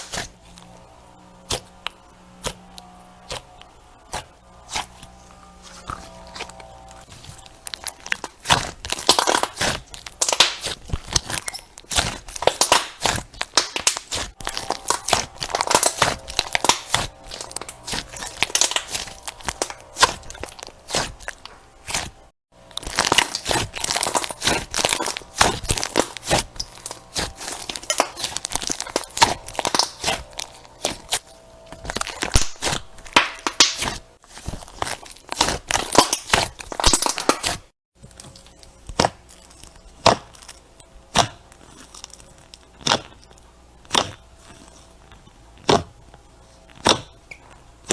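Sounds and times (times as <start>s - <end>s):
crunchy slime crackling: 0.0s - 47.9s.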